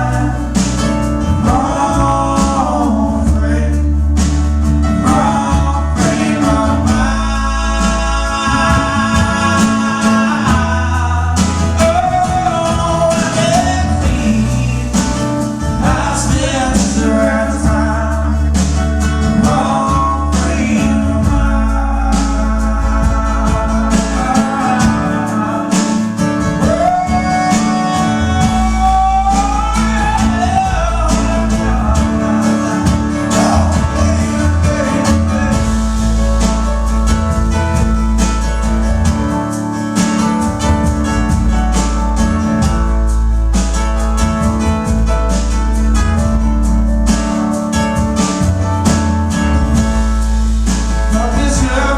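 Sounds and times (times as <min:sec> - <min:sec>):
person singing: 0:00.0 - 0:37.9, 0:51.0 - 0:51.9
bass line: 0:00.0 - 0:51.9
guitar: 0:00.0 - 0:51.9.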